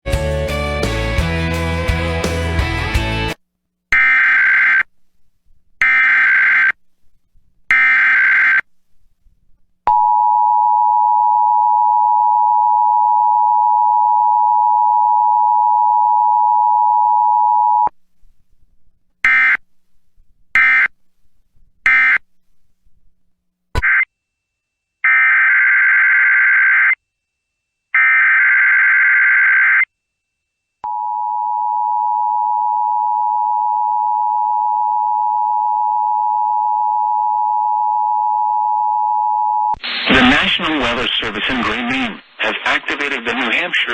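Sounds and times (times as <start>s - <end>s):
steady attention tone: 39.4s - 43.5s
buzzy digital header bursts: 39.8s - 43.7s
short end-of-message bursts: 39.8s - 43.9s.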